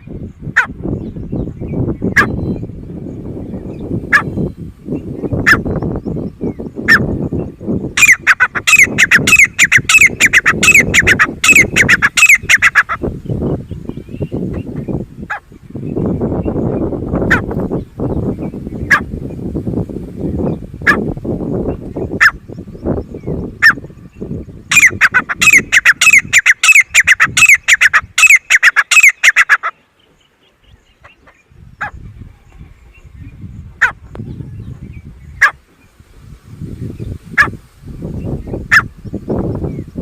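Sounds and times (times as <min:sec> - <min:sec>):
francolin calling: 0:03.6 - 0:19.1, 0:21.6 - 0:32.0.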